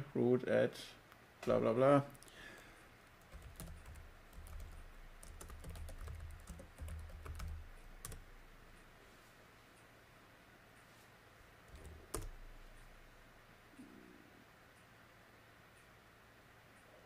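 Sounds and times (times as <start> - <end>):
computer keyboard typing: 3.2 - 8.3, 11.7 - 12.4.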